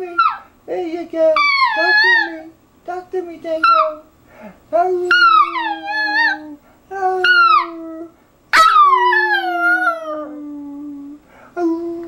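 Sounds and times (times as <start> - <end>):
dog howling: 1.4 - 2.5, 5.0 - 6.6, 7.2 - 10.8.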